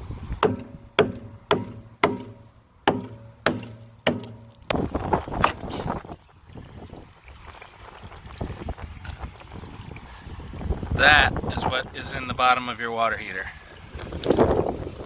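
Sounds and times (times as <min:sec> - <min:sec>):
heavy blows on steel tank: 0:00.4 - 0:05.7.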